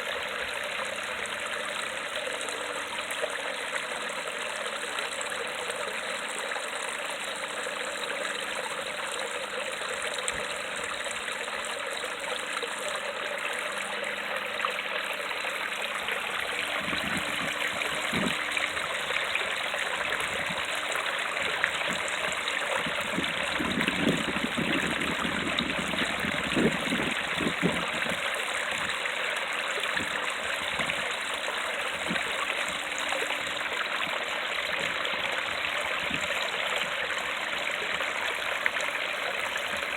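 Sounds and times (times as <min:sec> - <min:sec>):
water gurgles and plops: 0:00.0 - 0:39.9
water rushing over rocks: 0:09.9 - 0:39.9.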